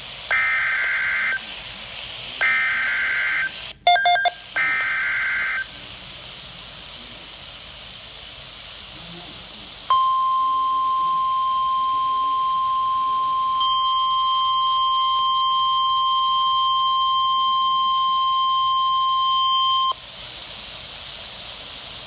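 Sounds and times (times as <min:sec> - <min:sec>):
faint radio static: 0:00.0 - 0:22.0
steady alarm tone: 0:00.3 - 0:01.4, 0:02.4 - 0:05.7, 0:09.9 - 0:20.0.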